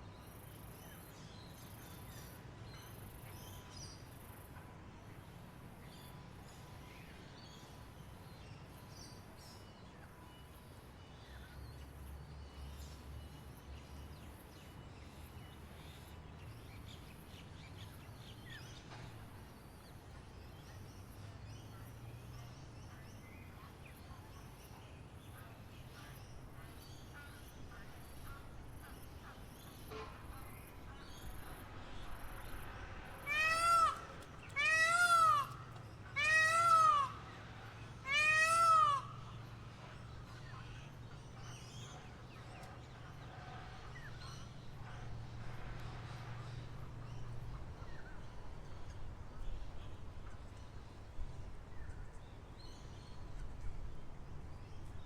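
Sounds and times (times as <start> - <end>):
animal mewing calls: 33.2 - 37.3, 38.0 - 39.1.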